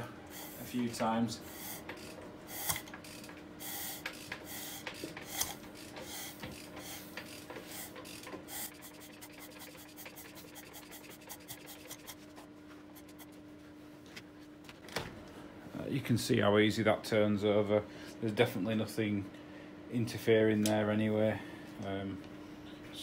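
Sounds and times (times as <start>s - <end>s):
engine turned by hand rasping: 3.8s - 12.3s.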